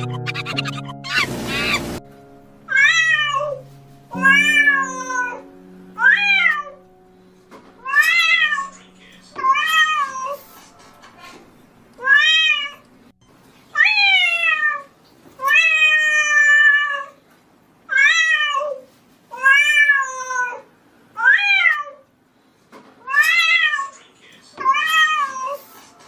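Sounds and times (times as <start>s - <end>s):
cat meowing: 2.7s - 5.4s, 6.0s - 6.8s, 7.8s - 8.7s, 9.4s - 10.4s, 12.0s - 12.8s, 13.8s - 17.2s, 17.9s - 22.0s, 23.0s - 23.9s, 24.6s - 25.6s.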